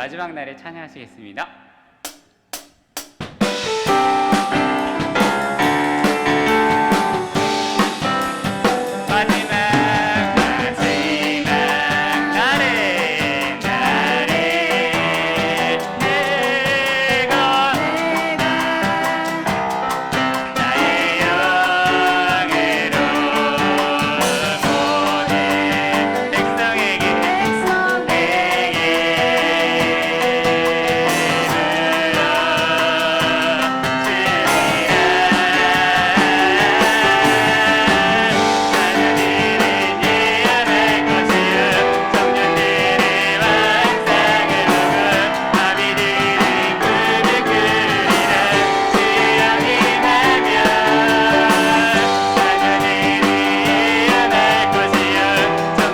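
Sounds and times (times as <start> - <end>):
drum kit: 2.0 - 55.9
piano: 3.2 - 55.9
people singing: 3.5 - 55.9.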